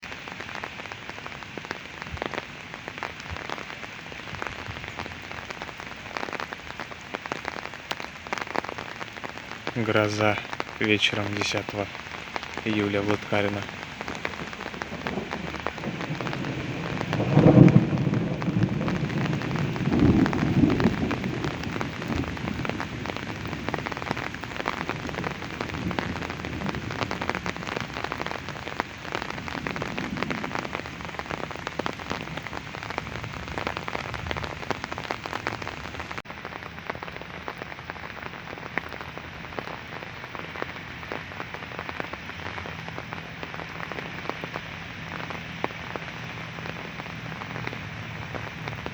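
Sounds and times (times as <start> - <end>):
rain falling on surfaces: 0.0 - 48.9
thunder rolling: 9.9 - 36.2.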